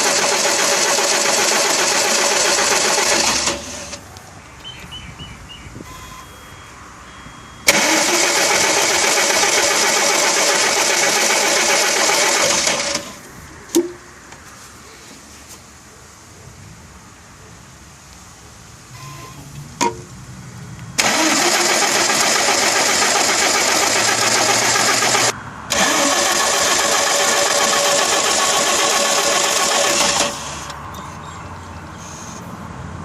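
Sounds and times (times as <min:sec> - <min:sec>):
starter motor cranking engine: 0:00.0 - 0:04.0, 0:07.6 - 0:13.2, 0:21.0 - 0:30.8.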